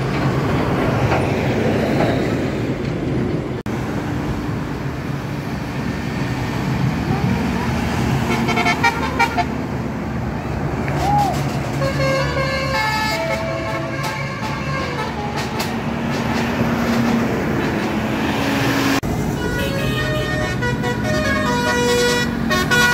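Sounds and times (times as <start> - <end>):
bus engines: 0.0 - 22.9
road noise: 0.0 - 22.9
multi-tone musical air horn: 11.8 - 15.7, 19.4 - 22.9.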